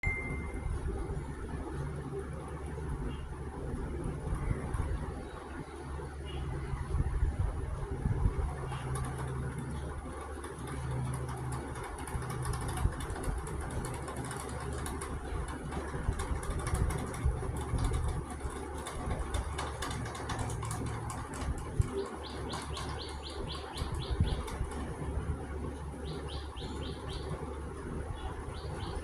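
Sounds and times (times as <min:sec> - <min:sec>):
birds: 0:08.5 - 0:29.0.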